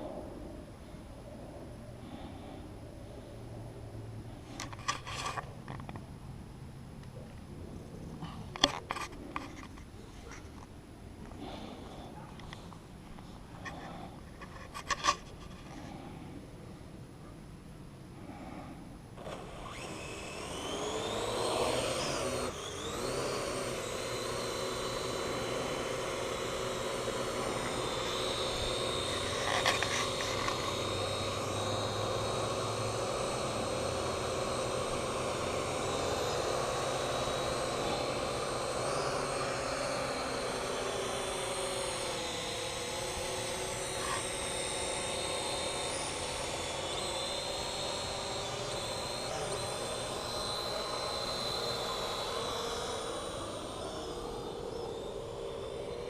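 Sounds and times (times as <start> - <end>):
drone rotors whining: 19.2 - 56.0.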